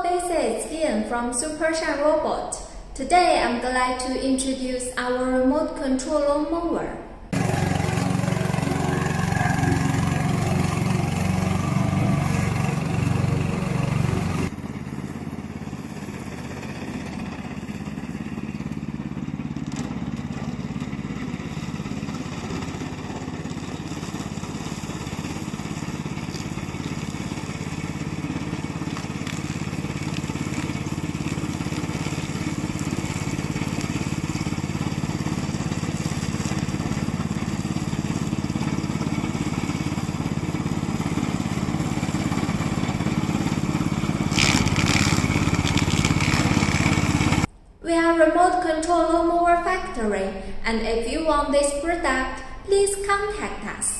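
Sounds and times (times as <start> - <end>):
mower engine running: 7.3 - 47.5.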